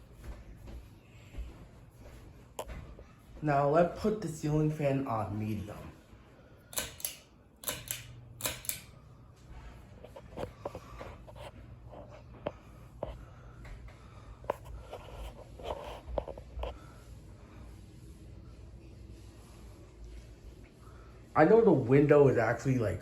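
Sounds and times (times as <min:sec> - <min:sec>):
fan motor humming: 0:00.0 - 0:23.0
pull-chain switch clicking: 0:06.7 - 0:08.9.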